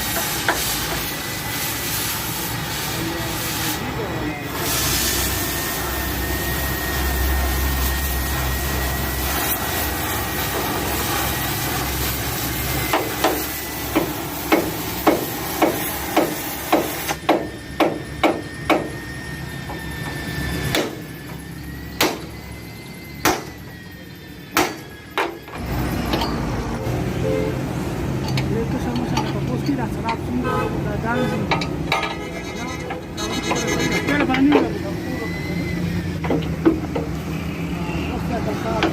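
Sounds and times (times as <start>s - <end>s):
hammer blows: 12.8s - 21.4s, 22.0s - 22.4s, 23.2s - 23.7s, 24.5s - 27.6s.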